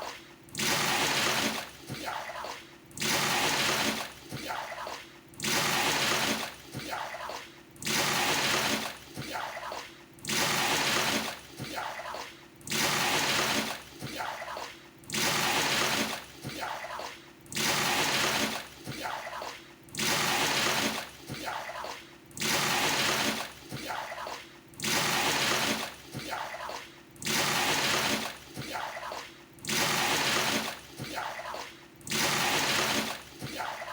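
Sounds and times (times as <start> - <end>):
water poured with a dipper splashing: 3.0 - 4.4, 7.8 - 9.0, 20.0 - 21.4, 22.4 - 23.9, 24.8 - 28.7, 29.6 - 33.6.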